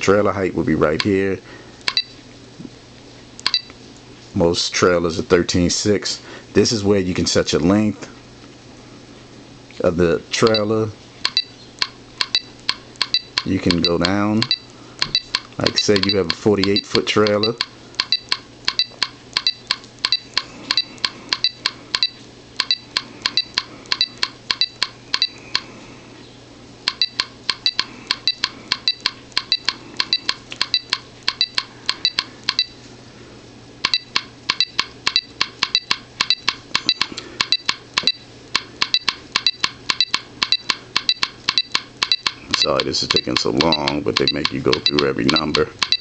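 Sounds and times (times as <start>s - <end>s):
short pitched gps beeps: 1.9s - 2.2s, 3.4s - 3.7s, 10.4s - 25.4s, 26.9s - 32.8s, 38.8s - 46.0s.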